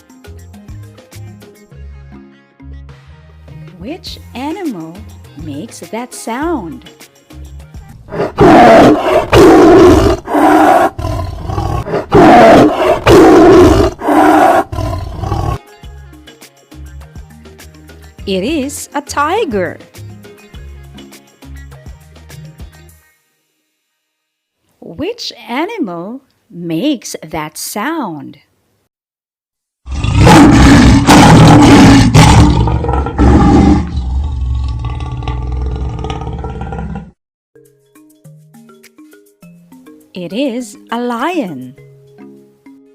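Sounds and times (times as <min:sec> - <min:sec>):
tiger roaring: 0:08.1 - 0:15.6, 0:29.9 - 0:37.2.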